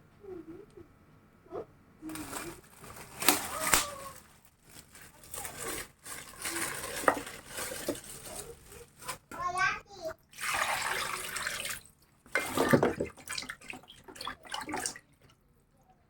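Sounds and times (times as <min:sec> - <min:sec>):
rustling and crinkling: 0:01.5 - 0:09.6
faint voices: 0:05.0 - 0:10.1.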